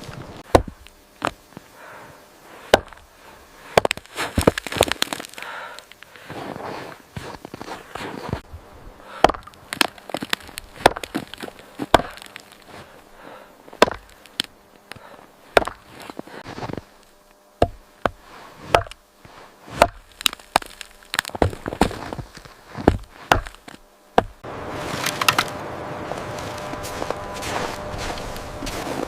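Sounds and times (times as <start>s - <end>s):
sharp irregular knocks and cracks: 0.4s - 1.4s, 3.8s - 6.0s, 9.2s - 12.7s, 13.8s - 15.0s, 15.6s - 16.3s, 17.6s - 19.0s, 19.8s - 24.4s, 25.0s - 25.5s.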